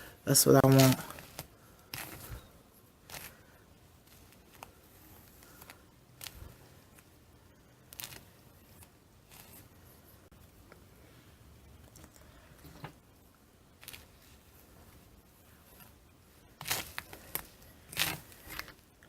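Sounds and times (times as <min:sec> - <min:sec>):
faint rustling of hair: 0:00.0 - 0:19.0.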